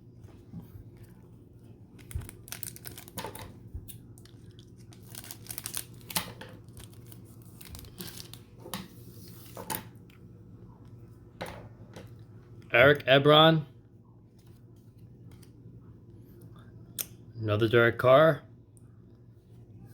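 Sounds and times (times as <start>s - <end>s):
wrapper crinkling: 1.9s - 8.6s
cards rustling: 1.9s - 9.8s.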